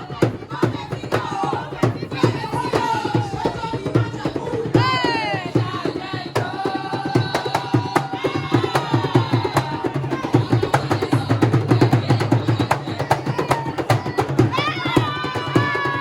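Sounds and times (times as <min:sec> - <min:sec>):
fast drumming: 0:00.0 - 0:16.0.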